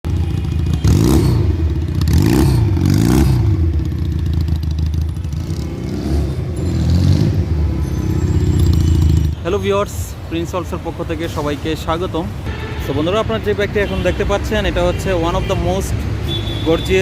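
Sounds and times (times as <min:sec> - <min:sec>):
motorcycle engine revving: 0:00.1 - 0:09.4.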